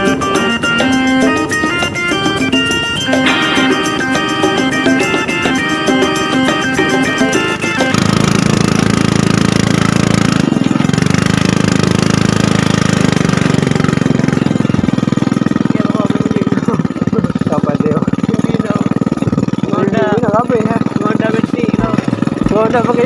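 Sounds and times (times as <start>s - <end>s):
motorcycle engine running: 0.0s - 23.0s.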